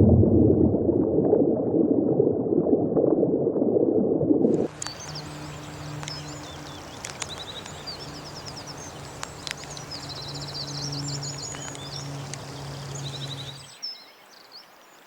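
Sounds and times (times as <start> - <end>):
faint steady low hum: 4.6 - 13.8
birds chirping and trilling: 4.7 - 15.0.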